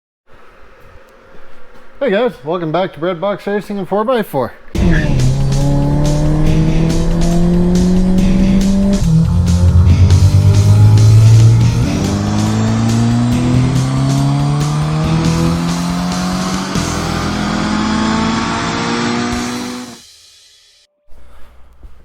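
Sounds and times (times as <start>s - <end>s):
car engine accelerating: 4.8s - 20.0s
music with steady beat: 4.8s - 20.8s.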